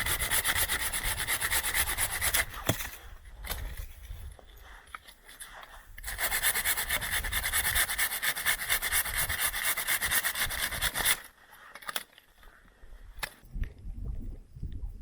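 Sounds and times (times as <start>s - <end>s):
hand saw cutting wood: 0.0s - 3.0s, 5.4s - 12.0s.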